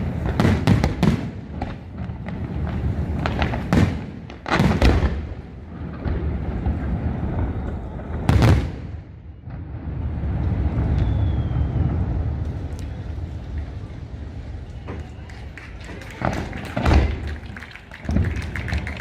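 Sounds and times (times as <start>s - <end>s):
fireworks bursting: 0.0s - 19.0s
steady low rumble: 5.2s - 15.7s.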